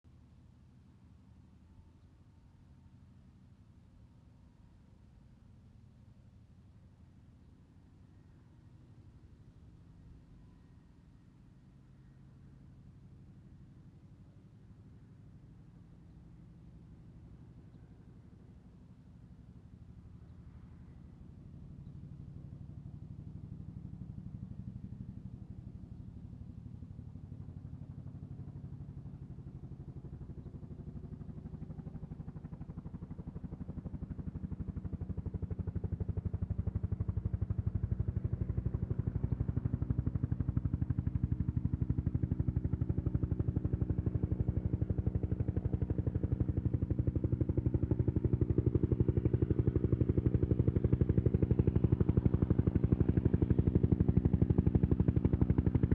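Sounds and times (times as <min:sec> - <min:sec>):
helicopter rotor beating: 0:27.4 - 0:55.9.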